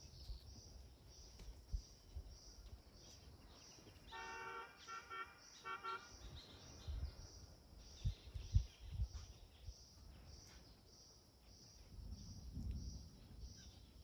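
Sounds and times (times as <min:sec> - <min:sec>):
horn blasts: 0:04.1 - 0:06.2.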